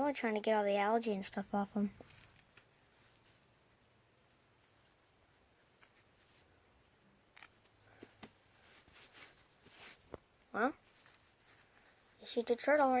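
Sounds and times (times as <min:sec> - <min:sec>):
soft clicks and scratches: 0:01.9 - 0:10.3.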